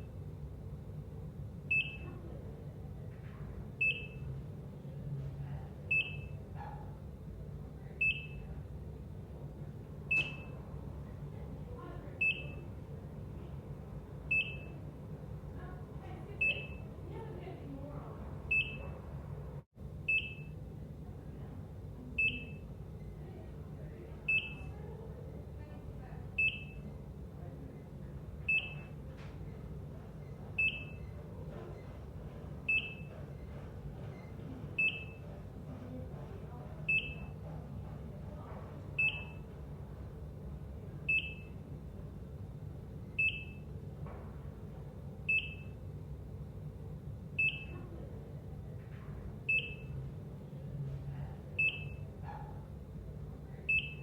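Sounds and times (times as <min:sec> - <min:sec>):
low room hum: 0:00.0 - 0:54.0
heart monitor beeping: 0:01.7 - 0:02.2, 0:03.8 - 0:04.4, 0:05.9 - 0:06.8, 0:08.0 - 0:08.7, 0:10.1 - 0:10.6, 0:12.2 - 0:12.7, 0:14.3 - 0:14.8, 0:16.4 - 0:16.9, 0:18.5 - 0:19.0, 0:20.1 - 0:20.6, 0:22.2 - 0:22.7, 0:24.2 - 0:24.7, 0:26.3 - 0:27.0, 0:28.4 - 0:39.7, 0:41.0 - 0:41.6, 0:43.1 - 0:43.7, 0:45.3 - 0:45.8, 0:47.4 - 0:47.8, 0:49.4 - 0:50.1, 0:51.6 - 0:52.6, 0:53.7 - 0:54.0.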